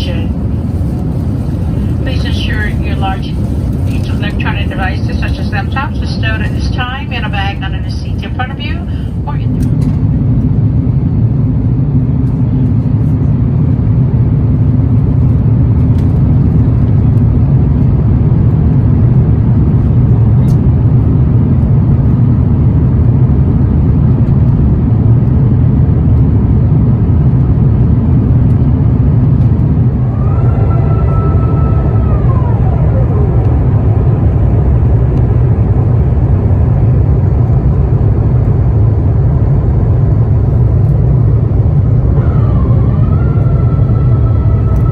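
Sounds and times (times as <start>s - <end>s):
aircraft cabin rumble: 0.0s - 44.9s
mechanical whine: 26.9s - 44.9s.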